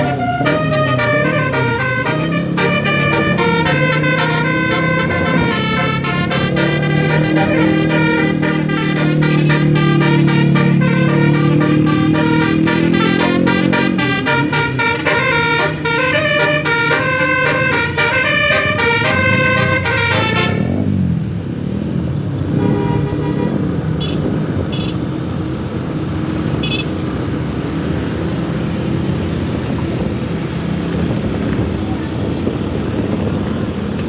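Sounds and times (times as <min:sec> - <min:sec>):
multi-tone air horn melody: 0:00.0 - 0:20.8, 0:22.6 - 0:25.0
traffic noise: 0:00.0 - 0:34.0
vehicle engine: 0:00.0 - 0:34.0.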